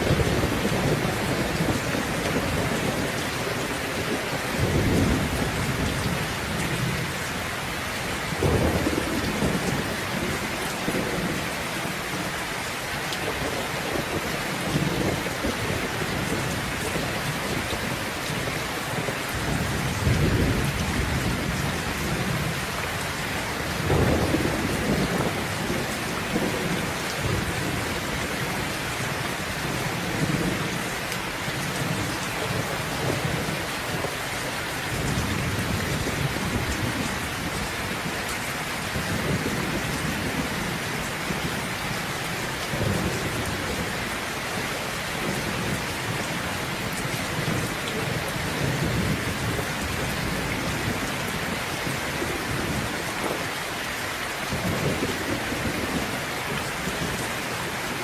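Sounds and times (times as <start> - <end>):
low thunder rumbling: 0.0 - 12.3, 13.2 - 34.2, 44.9 - 53.5, 54.5 - 58.0
steady rain falling: 0.0 - 58.0.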